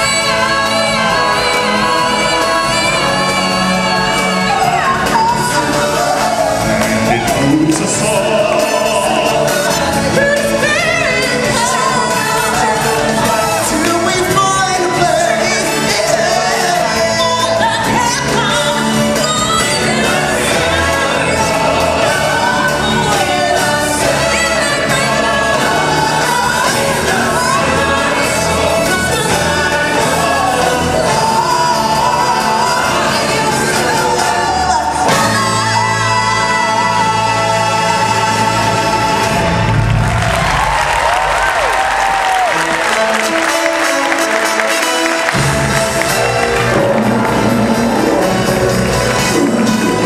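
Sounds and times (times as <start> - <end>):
stage musical singing with music: 0.0 - 50.0.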